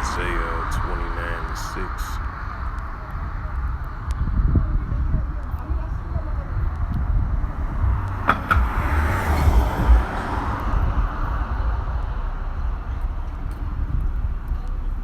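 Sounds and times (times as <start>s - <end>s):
swell of noise: 0.0s - 15.0s
vehicle low rumble: 0.0s - 15.0s.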